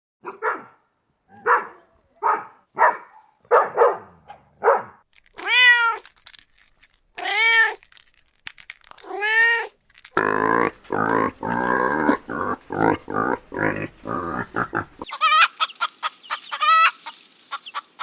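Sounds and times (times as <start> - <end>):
dog barking: 0.2 - 5.0
cat meowing: 5.4 - 6.0.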